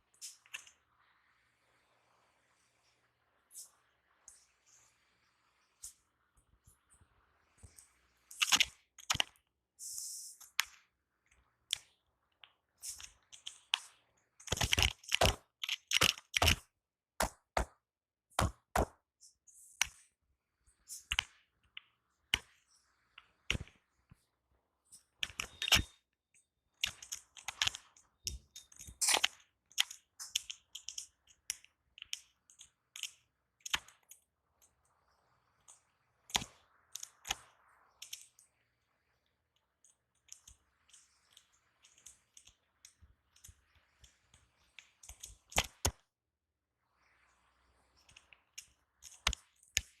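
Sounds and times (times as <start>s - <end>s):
hand slaps and claps: 18.4s - 19.0s.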